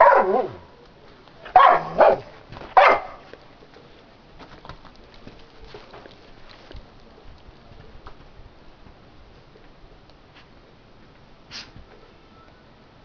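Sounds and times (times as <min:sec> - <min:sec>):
dog barking: 0:00.0 - 0:00.7, 0:01.5 - 0:03.3.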